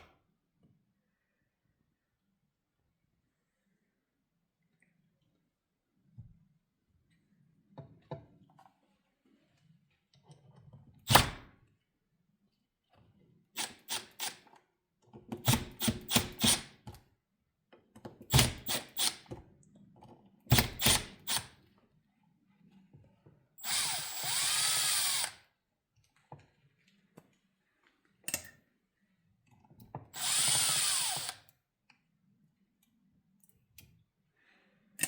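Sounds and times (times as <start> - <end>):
small power tool whirring: 20.5 - 21.5, 23.6 - 25.4, 30.2 - 31.5.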